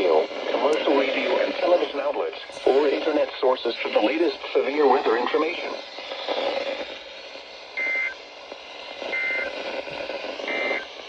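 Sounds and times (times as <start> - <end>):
buzzy alternating two-tone data bursts: 0.0 - 11.0
radio static: 0.0 - 11.0.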